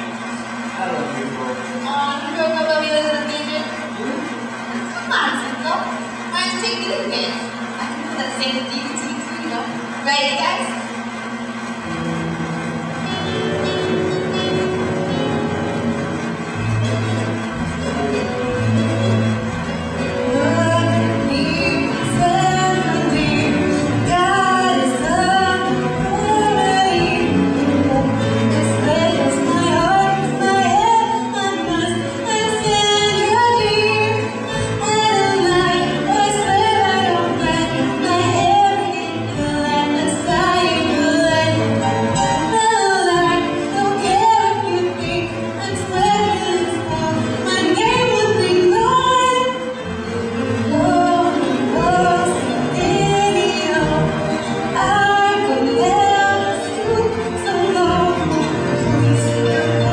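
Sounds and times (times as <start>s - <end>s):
band accompaniment: 11.4s - 59.9s
woman singing: 20.2s - 49.8s, 50.4s - 59.9s.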